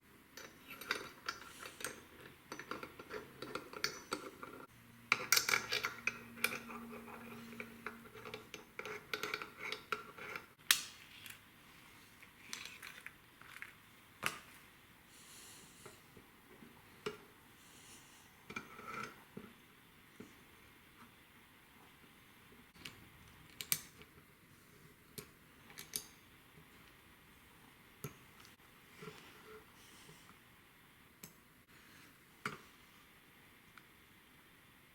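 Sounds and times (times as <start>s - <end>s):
metallic clinks and scrapes: 0.4s - 10.5s.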